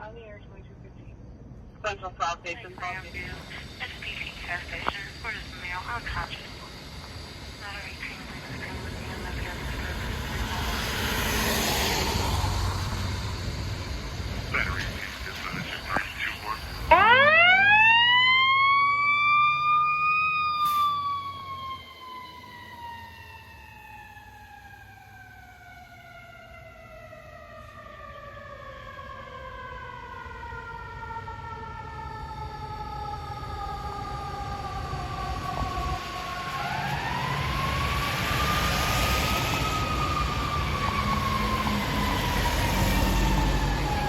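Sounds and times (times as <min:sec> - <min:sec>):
low truck rumble: 0:05.6 - 0:18.2
fire truck siren winding: 0:16.6 - 0:44.0.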